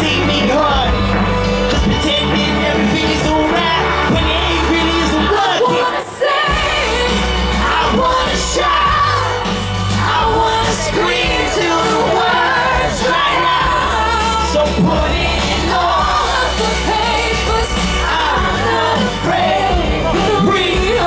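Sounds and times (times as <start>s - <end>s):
heavy bass backing: 0.0s - 21.0s.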